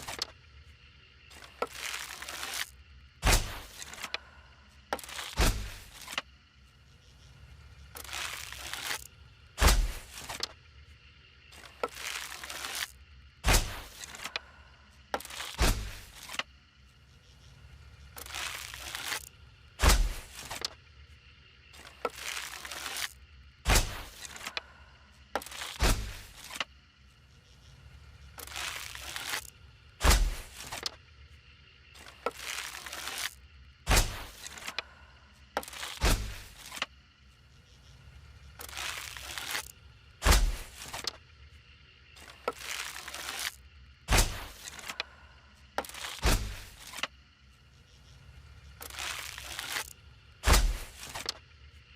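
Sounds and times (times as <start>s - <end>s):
arrow hitting target thud: 3.2s - 3.7s, 19.8s - 20.2s, 23.7s - 24.1s, 33.9s - 34.3s, 40.2s - 40.7s, 44.1s - 44.5s, 50.4s - 50.9s.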